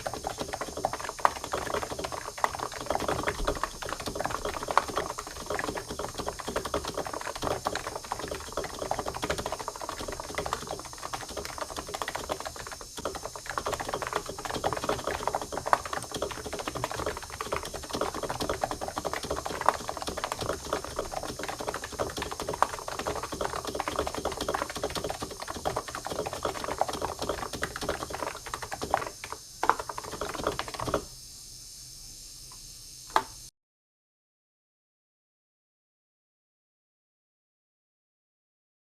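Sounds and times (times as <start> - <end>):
typing on computer keyboard: 0.0 - 31.1.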